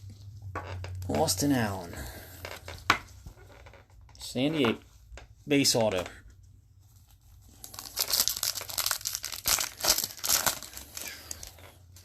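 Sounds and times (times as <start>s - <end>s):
foil wrapper crinkling: 7.0s - 12.0s.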